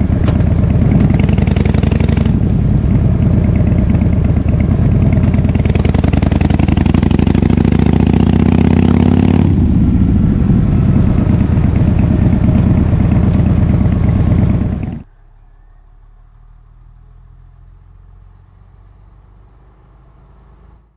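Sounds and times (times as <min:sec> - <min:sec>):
motorcycle engine revving: 0:00.0 - 0:16.4.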